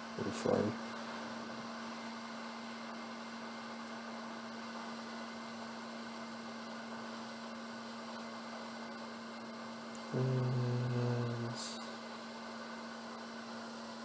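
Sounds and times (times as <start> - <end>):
steady low hum: 0.0 - 2.6, 9.9 - 12.7.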